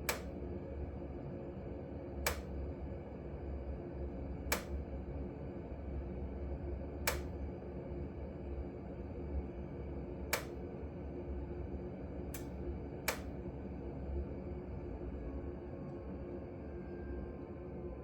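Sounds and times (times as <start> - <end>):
boiler clicks: 0.0 - 0.4, 2.3 - 2.5, 4.5 - 4.8, 7.1 - 7.4, 10.4 - 10.6, 12.4 - 13.3
steady low hum: 0.0 - 18.0.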